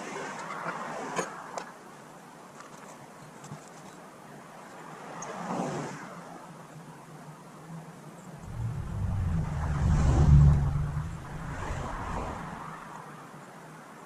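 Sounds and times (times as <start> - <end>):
vehicle passing by: 8.4 - 12.8.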